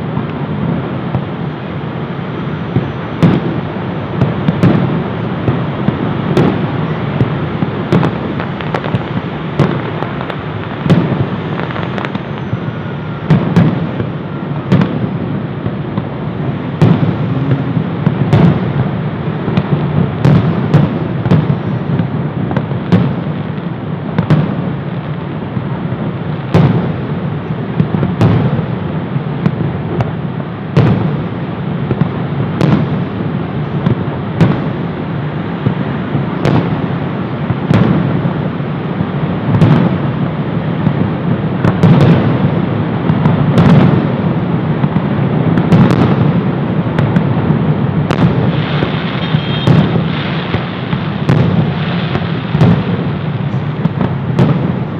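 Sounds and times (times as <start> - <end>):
fireworks crackle rumble: 0.0 - 54.9
fireworks shells bursting: 48.0 - 54.9.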